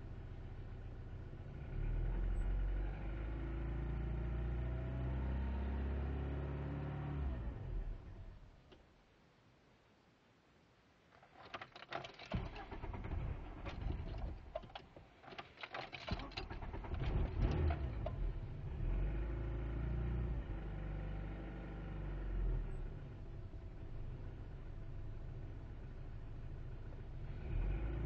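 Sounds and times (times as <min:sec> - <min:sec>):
car engine cranking and idling: 0:11.2 - 0:28.0.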